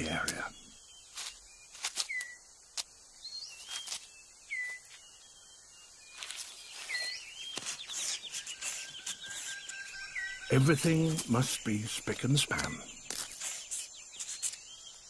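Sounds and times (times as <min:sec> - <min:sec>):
birds whistled calls: 0:00.0 - 0:15.0
dry leaves crackling and rustling: 0:01.1 - 0:02.9, 0:03.5 - 0:05.0, 0:06.1 - 0:11.6.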